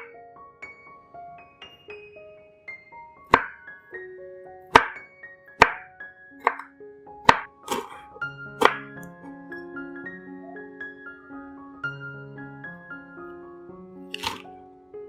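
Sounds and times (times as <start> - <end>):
background piano music: 0.0 - 15.0
knife chopping on cutting board: 3.3 - 3.5, 4.7 - 5.0, 6.4 - 6.7, 7.3 - 8.9, 14.2 - 14.4.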